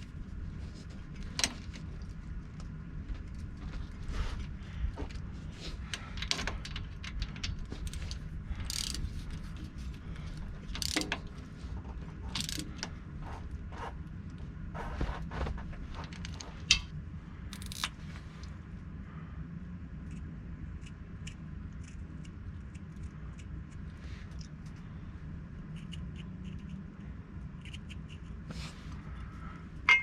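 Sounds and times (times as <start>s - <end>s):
low hum: 0.0s - 30.0s
ratchet clicks: 6.2s - 9.1s, 10.7s - 11.3s, 12.3s - 12.9s, 17.5s - 17.9s.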